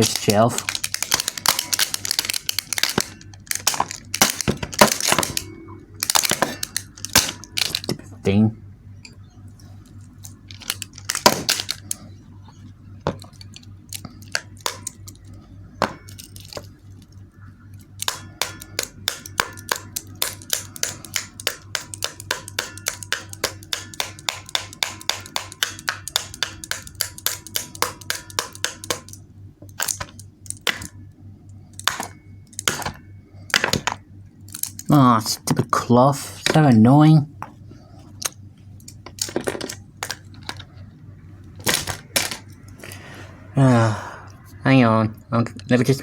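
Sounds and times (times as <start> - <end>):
rapid mechanism clicking: 0.0 - 5.4, 17.8 - 31.0.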